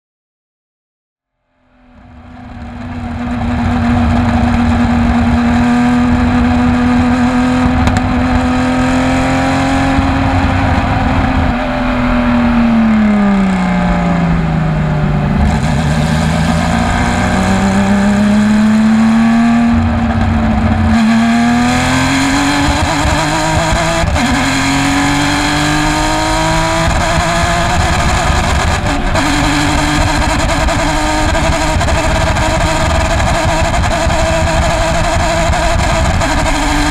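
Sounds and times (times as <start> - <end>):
misfiring race car engine: 2.0 - 36.9.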